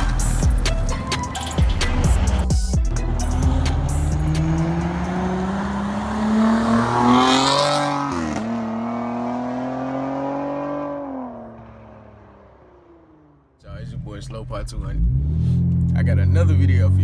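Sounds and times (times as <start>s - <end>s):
car engine revving: 0.0s - 17.0s.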